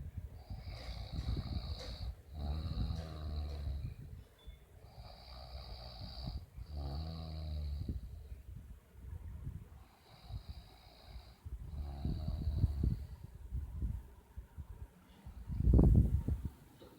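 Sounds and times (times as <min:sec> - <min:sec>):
person snoring loudly: 0:00.6 - 0:03.9, 0:04.9 - 0:08.2.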